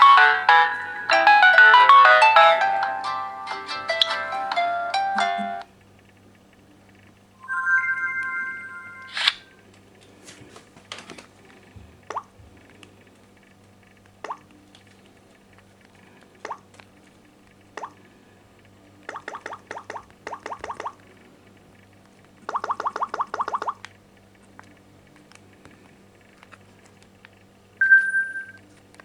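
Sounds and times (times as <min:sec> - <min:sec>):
chiming ringtone melody: 0:00.0 - 0:05.6, 0:07.4 - 0:09.2, 0:27.8 - 0:28.6
rising blip tones: 0:07.4 - 0:09.6.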